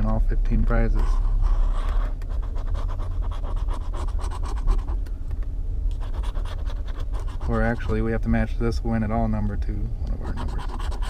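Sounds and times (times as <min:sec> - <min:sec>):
low car cabin hum: 0:00.0 - 0:11.0
lottery ticket being scratched: 0:00.8 - 0:05.0, 0:05.9 - 0:08.0, 0:10.2 - 0:11.0.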